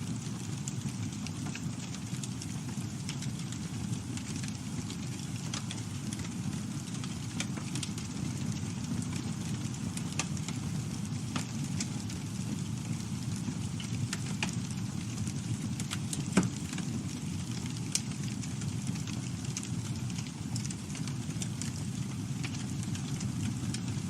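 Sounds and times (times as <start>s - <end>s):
flames rumbling: 0.0s - 24.0s
wood crackling and popping: 0.0s - 24.0s.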